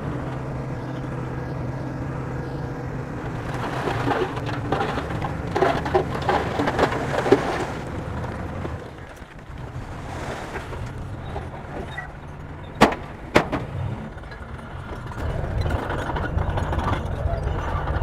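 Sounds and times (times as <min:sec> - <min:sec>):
bulldozer diesel engine running: 0:00.0 - 0:18.0
sharp knocks: 0:12.8 - 0:13.8.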